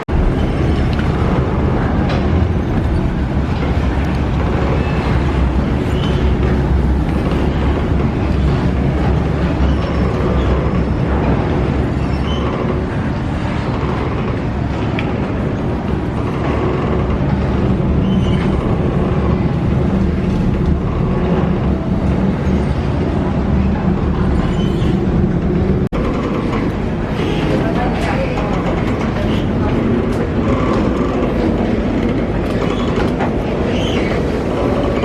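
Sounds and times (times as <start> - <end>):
faint voices: 22.9 - 35.0.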